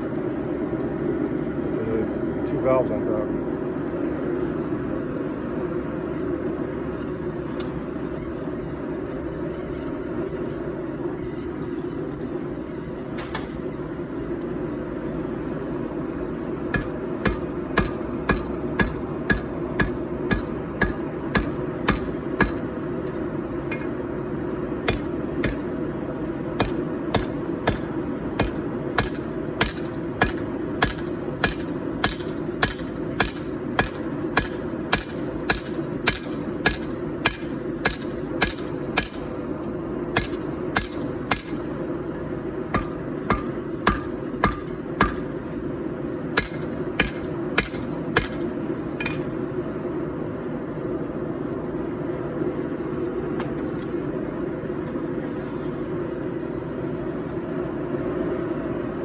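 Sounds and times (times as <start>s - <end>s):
gas forge rushing: 10.7s - 49.8s
hammer striking steel on anvil: 16.7s - 23.9s, 24.8s - 25.8s, 26.6s - 39.4s, 40.2s - 41.8s, 42.7s - 45.4s, 46.4s - 49.4s.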